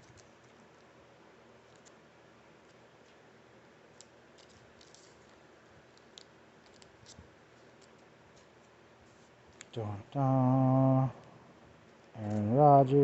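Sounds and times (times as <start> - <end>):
cards sliding into plastic sleeves: 3.9 - 9.7.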